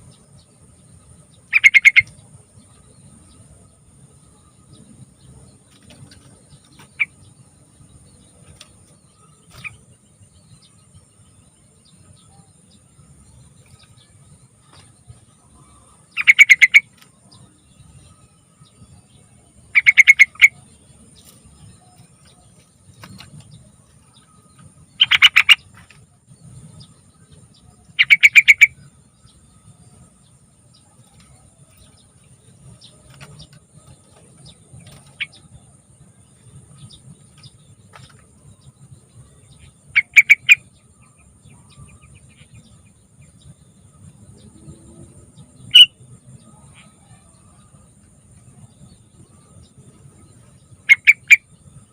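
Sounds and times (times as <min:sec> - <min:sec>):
bird singing bubbling phrases: 0:00.9 - 0:03.5, 0:13.4 - 0:18.2, 0:18.8 - 0:29.8, 0:38.4 - 0:43.8, 0:44.4 - 0:51.9.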